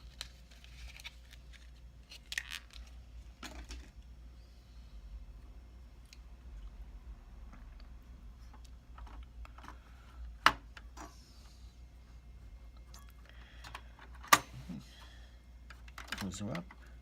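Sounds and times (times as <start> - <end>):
hands handling computer parts: 8.4 - 11.2, 15.6 - 16.8.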